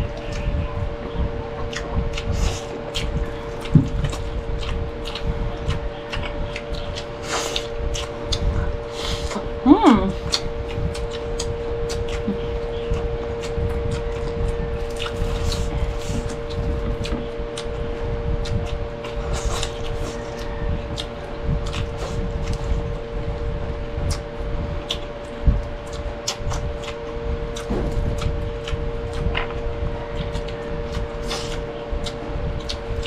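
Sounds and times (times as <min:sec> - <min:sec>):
chewing and lip smacking: 0:00.0 - 0:33.0
steady hum: 0:00.0 - 0:33.0.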